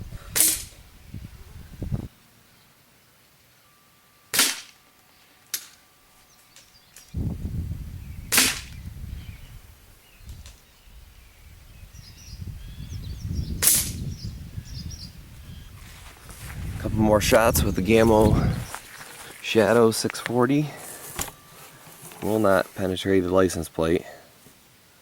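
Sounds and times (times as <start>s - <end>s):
air rifle shots: 0.3s - 0.8s, 8.3s - 8.8s.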